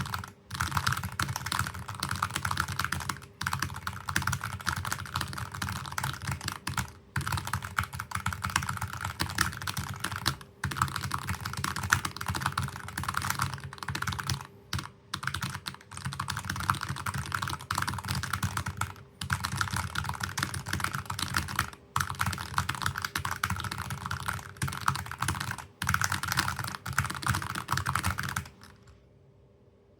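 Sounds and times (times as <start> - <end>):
fast keyboard typing: 0.0 - 28.9.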